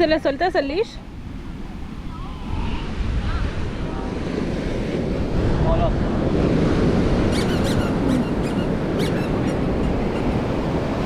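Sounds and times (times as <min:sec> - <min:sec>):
ocean surf: 0:00.0 - 0:11.0
wind on microphone: 0:00.0 - 0:11.0
short high squeaks: 0:07.3 - 0:10.3.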